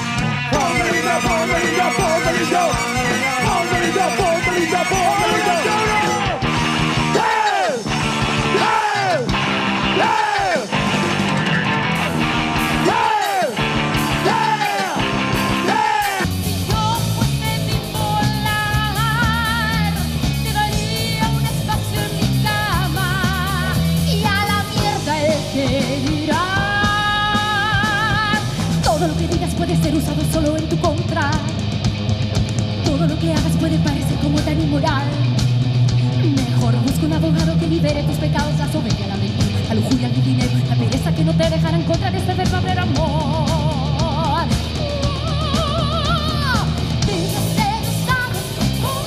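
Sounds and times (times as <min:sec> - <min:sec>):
rock band playing: 0:00.0 - 0:49.0
repeated falling cries: 0:00.5 - 0:09.3.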